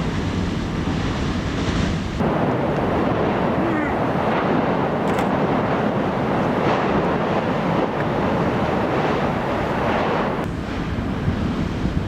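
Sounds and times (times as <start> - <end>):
strong wind buffeting microphone: 0.0 - 12.0.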